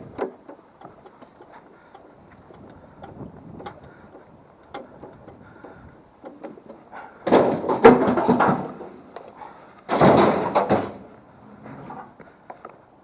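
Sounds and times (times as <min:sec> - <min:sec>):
scrap metal clattering crashes: 0:07.2 - 0:09.0, 0:09.9 - 0:12.1.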